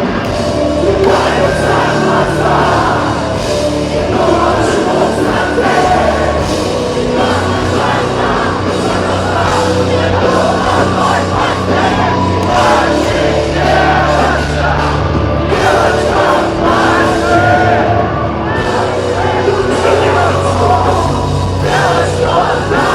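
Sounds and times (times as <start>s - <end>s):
crowd noise: 0.0s - 22.9s
heavy rock band playing live: 0.0s - 22.9s
person singing: 0.0s - 22.9s.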